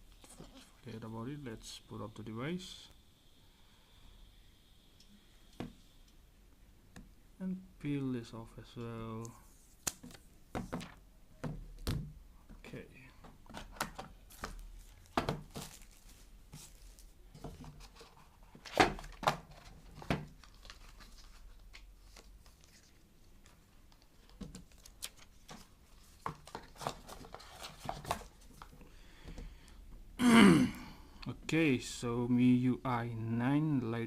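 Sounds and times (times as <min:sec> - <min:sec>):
smartphone being handled: 0:13.2 - 0:28.8
plastic film peeling: 0:13.8 - 0:17.2.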